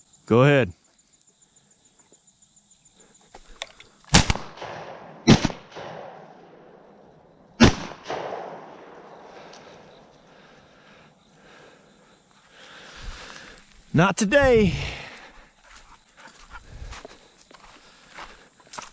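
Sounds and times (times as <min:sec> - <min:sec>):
shotgun shots with echo: 0:04.1 - 0:06.8, 0:07.6 - 0:09.3.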